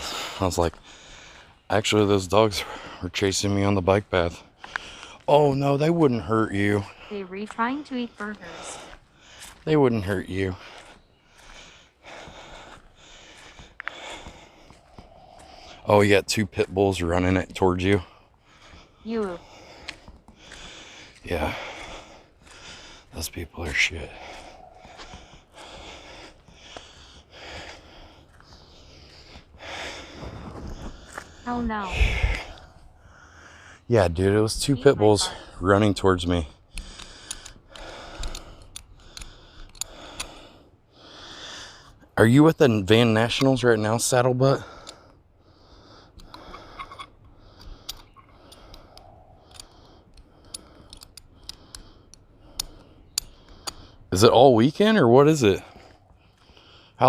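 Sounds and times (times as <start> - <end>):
person breathing hard: 0.0 - 1.7, 4.4 - 5.3, 10.5 - 15.9, 18.0 - 23.2, 24.0 - 33.9, 36.6 - 42.2, 44.6 - 54.1, 55.5 - 57.0.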